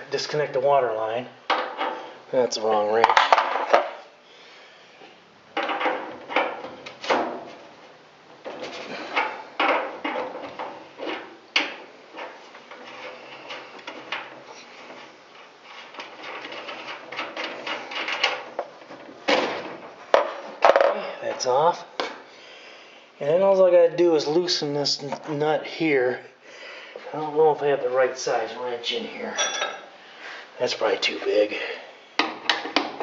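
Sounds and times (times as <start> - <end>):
tools clattering and scraping on metal: 1.5 - 4.0, 5.6 - 7.8, 8.4 - 22.2, 28.0 - 30.0.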